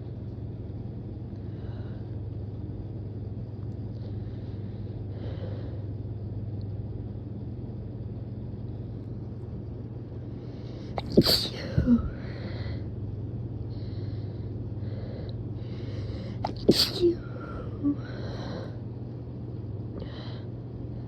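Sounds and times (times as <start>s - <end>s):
low hum: 0.0s - 21.0s.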